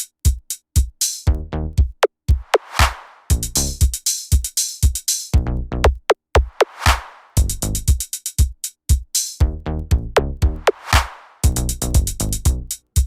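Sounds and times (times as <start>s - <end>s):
drum machine hits: 0.0s - 12.7s
booming bass tones: 1.3s - 1.8s, 7.4s - 7.8s, 9.4s - 10.7s.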